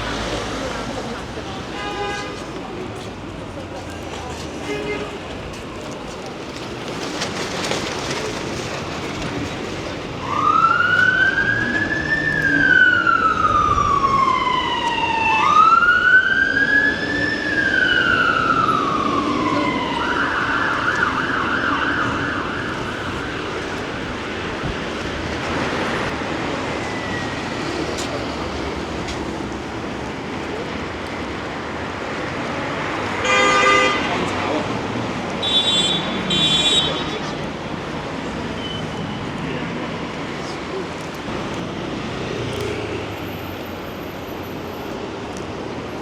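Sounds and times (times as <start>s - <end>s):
emergency vehicle siren: 10.2s - 25.1s.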